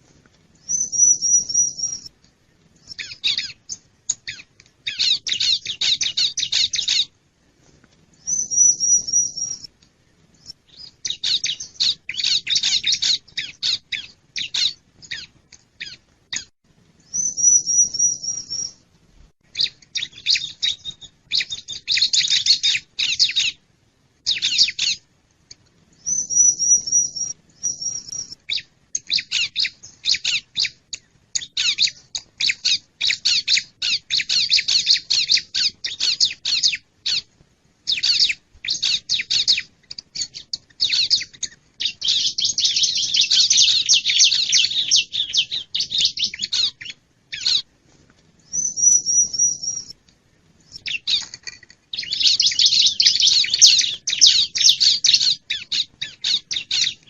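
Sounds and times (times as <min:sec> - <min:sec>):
bird high sharp chirps: 0:00.6 - 0:02.1, 0:02.8 - 0:07.1, 0:08.2 - 0:09.7, 0:10.4 - 0:16.5, 0:17.1 - 0:18.8, 0:19.5 - 0:23.6, 0:24.3 - 0:25.0, 0:26.0 - 0:30.8, 0:31.4 - 0:37.3, 0:37.9 - 0:47.7, 0:48.4 - 0:50.0, 0:50.7 - 0:57.0.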